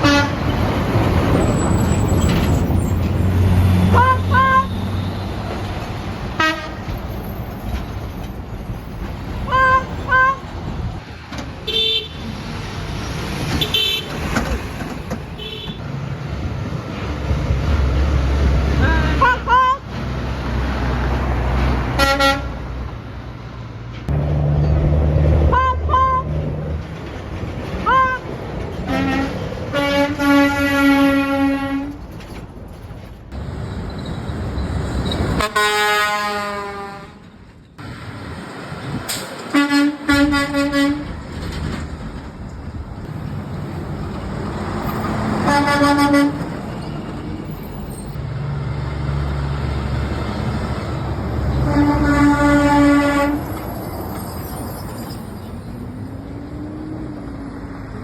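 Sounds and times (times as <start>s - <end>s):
passing traffic rumble: 0.0s - 58.0s
vehicle horn toots: 3.9s - 5.0s, 13.6s - 14.2s, 15.4s - 15.8s, 22.0s - 22.6s, 25.5s - 26.3s, 28.9s - 31.9s, 35.4s - 37.2s, 39.5s - 41.1s, 45.5s - 46.4s, 51.6s - 53.5s.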